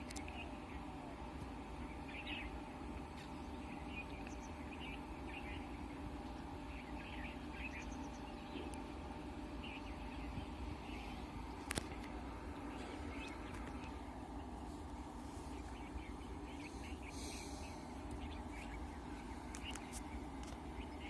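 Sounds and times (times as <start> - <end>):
low background rumble: 0.0 - 21.0.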